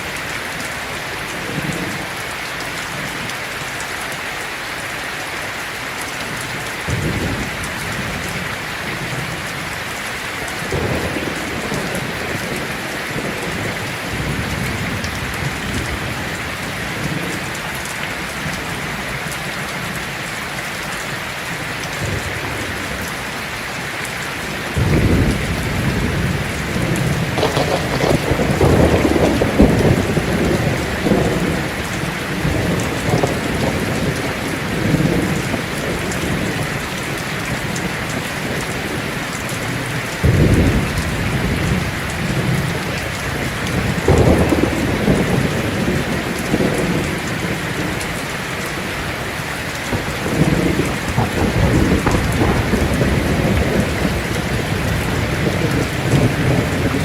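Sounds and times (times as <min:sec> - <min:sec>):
heavy rain on a tin roof: 0:00.0 - 0:57.0
thunder rumble: 0:24.6 - 0:36.8, 0:40.2 - 0:48.0, 0:49.8 - 0:57.0.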